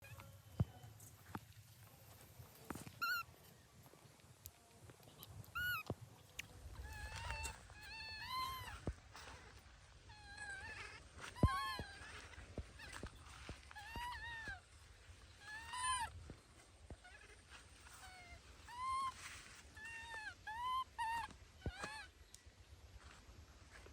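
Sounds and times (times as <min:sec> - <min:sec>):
baby monkey squeaky cries: 0:03.0 - 0:03.3, 0:05.5 - 0:05.9, 0:06.7 - 0:09.5, 0:10.1 - 0:16.2, 0:16.9 - 0:22.1.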